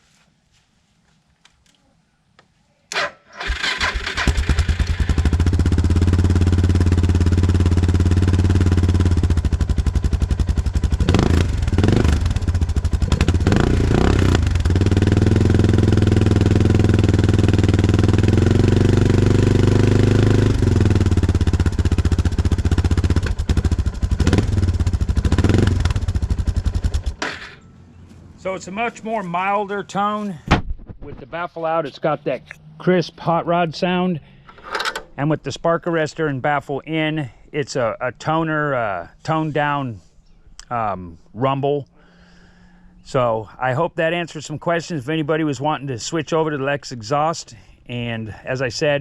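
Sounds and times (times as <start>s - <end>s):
motorcycle engine idling and revving: 3.4s - 27.9s.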